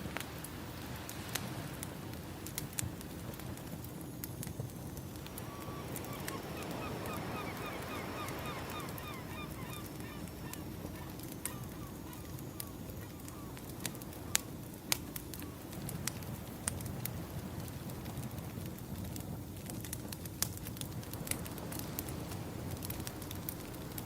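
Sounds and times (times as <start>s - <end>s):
campfire crackling: 0.0s - 24.0s
ocean waves rumbling: 0.2s - 19.0s, 20.8s - 24.0s
short falling bird calls: 5.4s - 13.6s.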